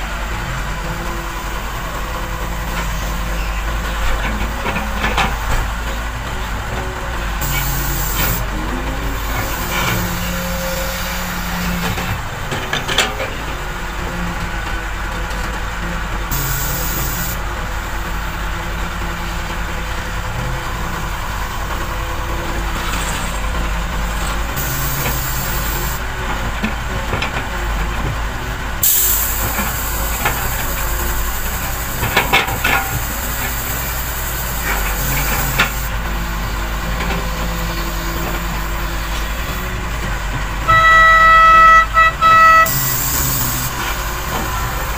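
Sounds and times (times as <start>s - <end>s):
diesel machinery engine running: 0.0s - 44.9s
high hiss: 16.3s - 17.4s, 28.8s - 35.9s, 42.6s - 44.9s.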